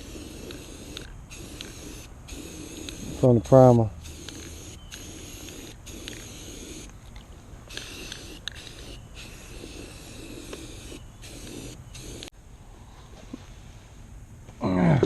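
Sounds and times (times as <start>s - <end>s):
spray paint hissing: 0.0s - 7.0s, 7.7s - 12.3s.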